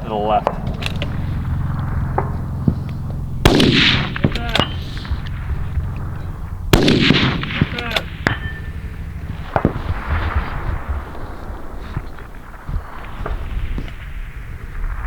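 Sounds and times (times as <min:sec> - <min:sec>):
rifle shot with echo: 0:00.0 - 0:15.0
sharp clicks and knocks: 0:00.4 - 0:10.5.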